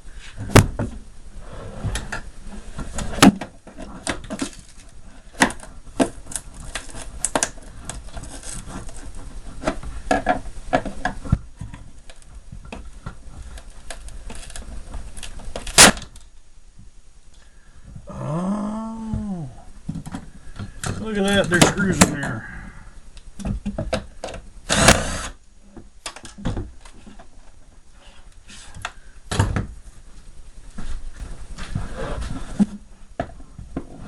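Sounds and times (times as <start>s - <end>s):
plastic and metal parts clattering: 2.8s - 16.2s.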